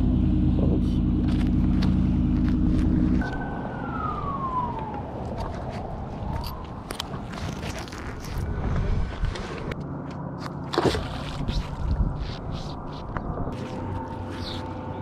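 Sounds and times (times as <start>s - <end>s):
engine idling: 0.0s - 3.3s
high whine gliding down: 1.3s - 7.6s.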